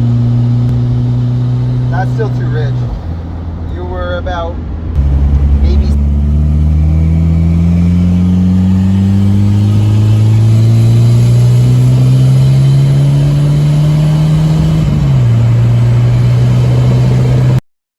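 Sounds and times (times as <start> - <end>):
car engine running under load: 4.6 - 17.6.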